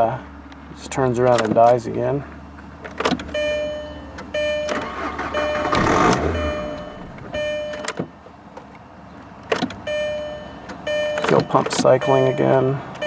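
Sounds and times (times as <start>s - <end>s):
car engine cranking and stalling: 2.6s - 13.0s
steady tone: 5.3s - 7.8s.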